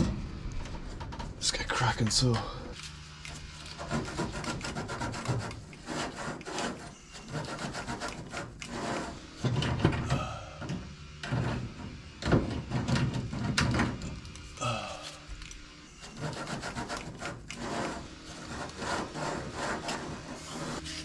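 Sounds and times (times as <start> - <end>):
hand tool rasping against surface: 3.7 - 9.2, 15.9 - 21.0.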